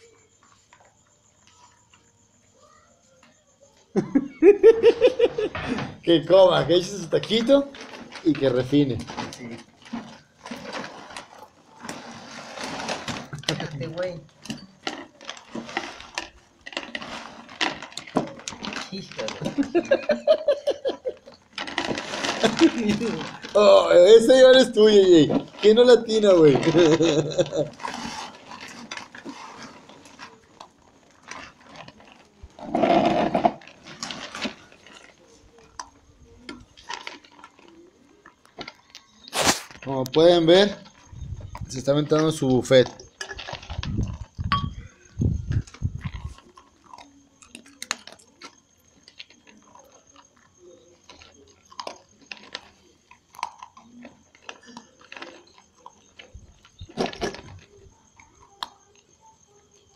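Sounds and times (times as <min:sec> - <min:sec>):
dog chewing food: 0:45.6 - 0:59.1.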